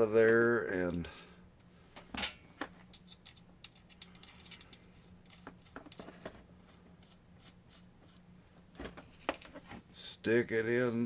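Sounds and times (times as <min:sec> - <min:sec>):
hard parts clicking and rattling: 0:02.2 - 0:06.3.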